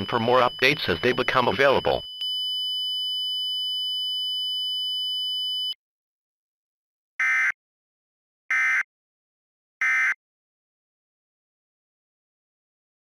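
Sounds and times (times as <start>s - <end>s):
steady electronic alert tone: 0.0s - 2.1s.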